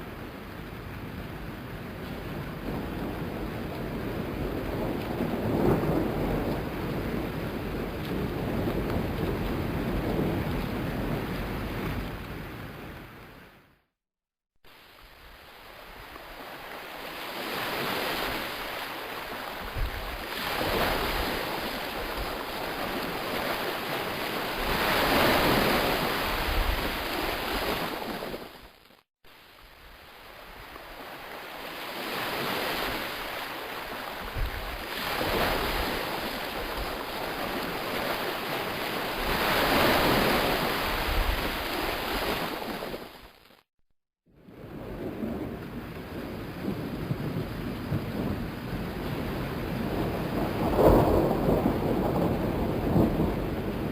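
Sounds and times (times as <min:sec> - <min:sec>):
ocean waves washing out: 0:14.7 - 0:43.4.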